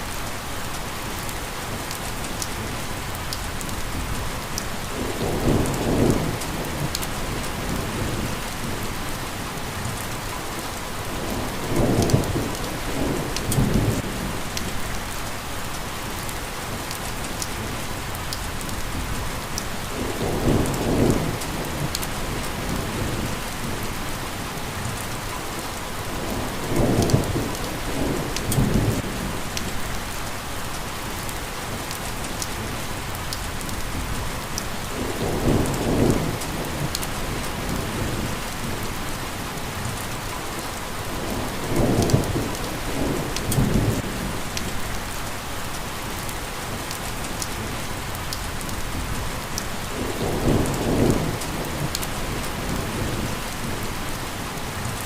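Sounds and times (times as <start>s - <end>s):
heavy rain hissing: 17.9s - 55.0s.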